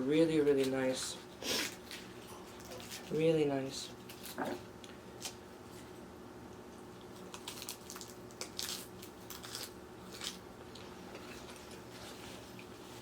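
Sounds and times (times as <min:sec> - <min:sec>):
faint steady hum: 0:00.0 - 0:13.0
person chewing crunchy food: 0:07.0 - 0:13.0.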